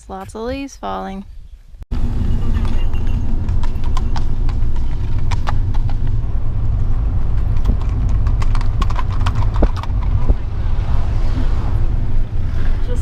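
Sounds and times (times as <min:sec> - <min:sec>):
steady low rumble: 0:00.0 - 0:13.0
horse hooves clip-clopping on road: 0:02.2 - 0:10.7.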